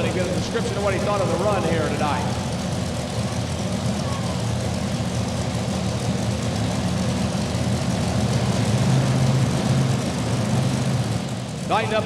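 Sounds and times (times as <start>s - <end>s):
tractor engine running: 0.0s - 12.0s.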